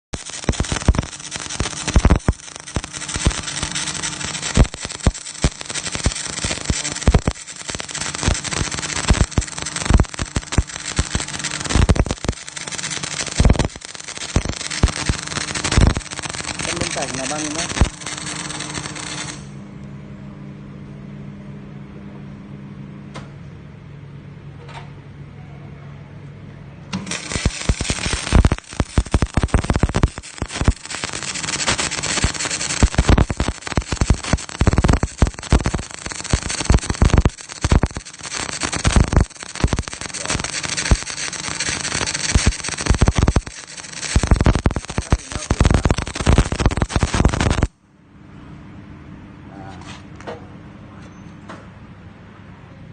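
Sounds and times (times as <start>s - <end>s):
welder humming: 0.0s - 19.6s, 26.9s - 47.7s
welding arc crackling: 0.0s - 19.6s, 26.9s - 47.8s.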